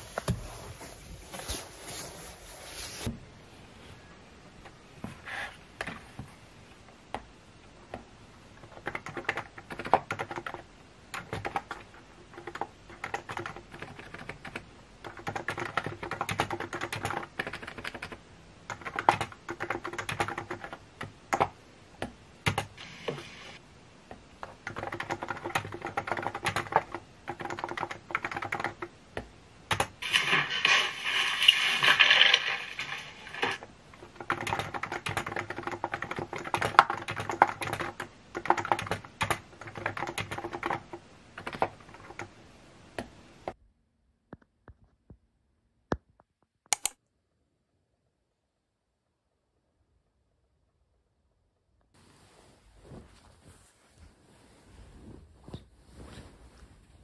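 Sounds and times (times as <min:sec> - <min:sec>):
keyboard typing: 0:08.6 - 0:23.2, 0:24.4 - 0:28.9, 0:29.7 - 0:42.3, 0:46.7 - 0:47.0.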